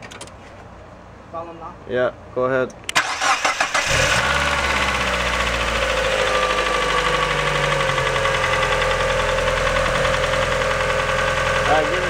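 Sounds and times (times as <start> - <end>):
car engine idling: 3.0 - 12.0
fast even engine ticking: 4.1 - 12.0.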